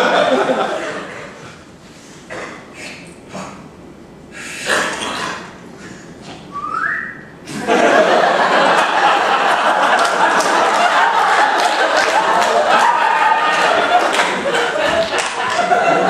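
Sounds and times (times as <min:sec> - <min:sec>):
audience laughing and applauding: 0:00.0 - 0:01.4, 0:07.6 - 0:16.0
upward sliding whistle: 0:06.5 - 0:07.3.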